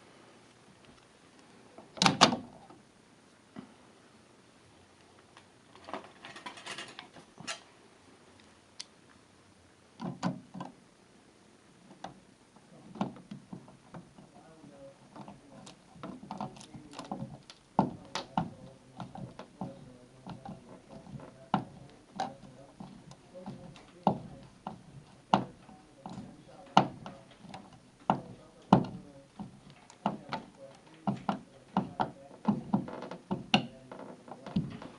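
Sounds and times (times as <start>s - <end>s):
hard parts clicking and knocking: 5.8s - 7.7s, 12.9s - 14.4s, 15.0s - 34.9s.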